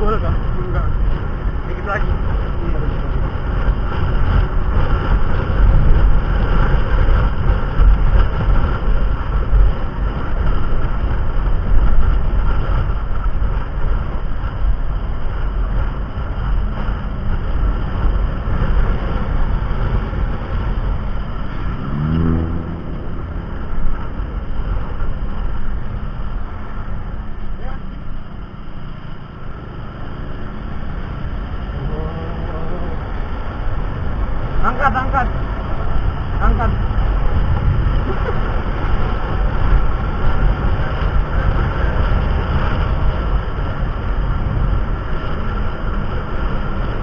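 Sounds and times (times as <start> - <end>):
car engine and road noise: 0.0 - 47.0
short rising whine: 21.6 - 25.1.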